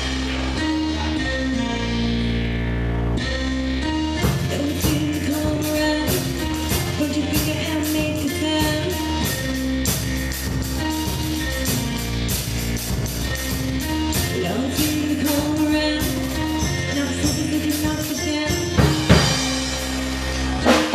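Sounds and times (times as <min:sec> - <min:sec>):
rock song with singing: 0:04.0 - 0:12.6, 0:13.7 - 0:20.9.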